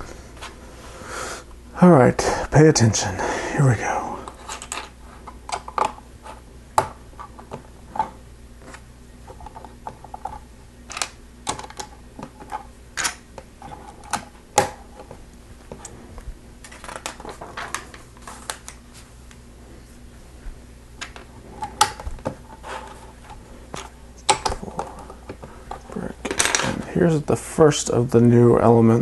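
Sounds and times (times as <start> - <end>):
plastic bricks clicking: 10.9 - 13.2.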